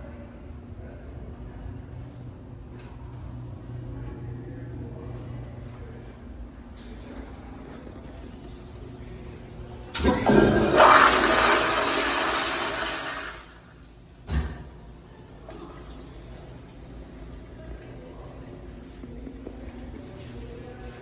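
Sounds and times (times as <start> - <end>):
toilet flushing: 9.8 - 14.1.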